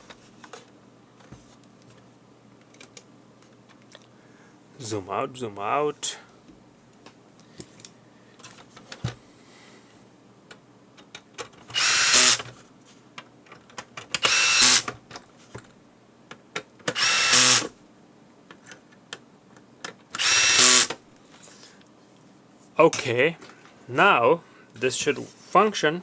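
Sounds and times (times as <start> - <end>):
electric screwdriver whirring: 11.7 - 12.4, 14.2 - 14.9, 16.9 - 17.7, 20.2 - 21.0.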